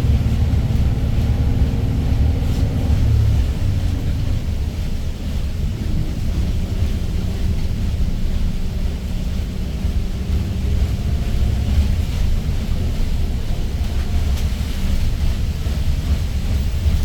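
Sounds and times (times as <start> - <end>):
road noise: 0.0 - 6.5
bus engine low rumble: 0.0 - 17.0.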